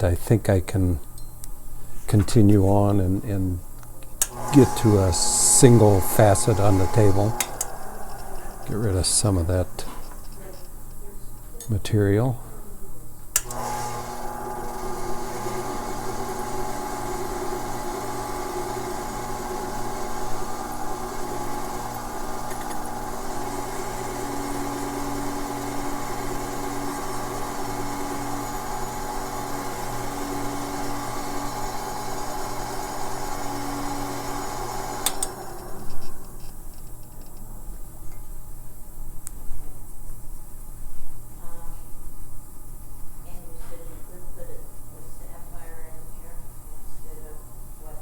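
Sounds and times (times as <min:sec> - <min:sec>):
lap motor humming: 0:04.2 - 0:10.2, 0:13.4 - 0:36.6
gemstone grinding on spinning lap: 0:13.8 - 0:34.9.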